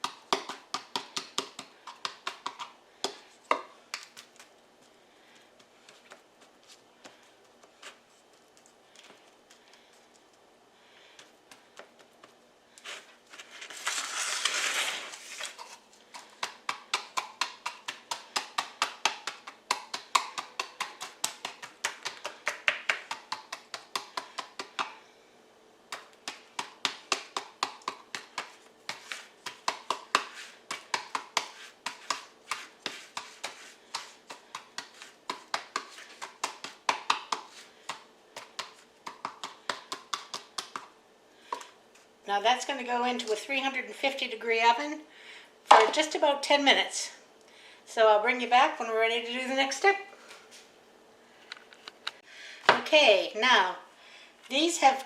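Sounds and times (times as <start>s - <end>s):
measuring cup tapping crust: 16.1s - 25.0s.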